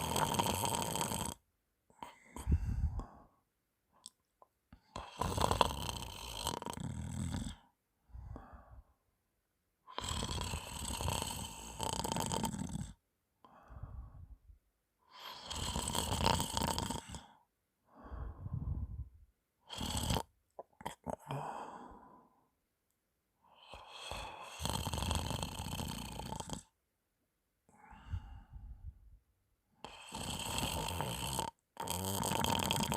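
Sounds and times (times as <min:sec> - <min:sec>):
woman snoring: 0:00.0 - 0:01.4, 0:04.9 - 0:07.7, 0:09.9 - 0:14.1, 0:15.1 - 0:17.4, 0:18.2 - 0:22.1, 0:23.5 - 0:26.8, 0:29.8 - 0:32.9.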